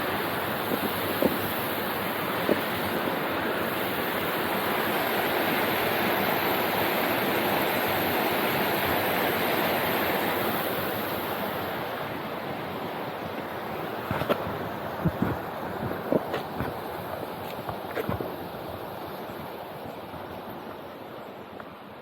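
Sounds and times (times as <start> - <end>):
fast-flowing stream rushing: 0.0 - 22.0.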